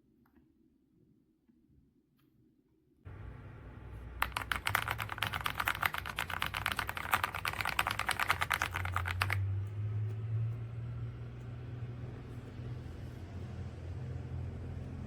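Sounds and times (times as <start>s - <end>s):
low steady hum: 3.0s - 15.0s
mechanical keyboard typing: 4.1s - 9.4s.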